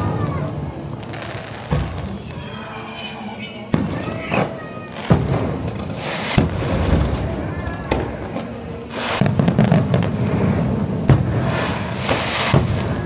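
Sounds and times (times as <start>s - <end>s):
firework crackling: 0.0s - 13.0s
firework shells bursting: 3.7s - 13.0s.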